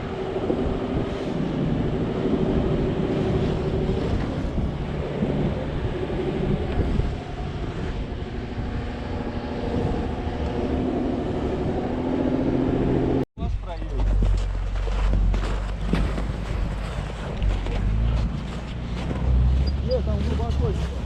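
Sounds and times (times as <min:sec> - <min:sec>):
continuous low rumble: 0:13.4 - 0:21.0.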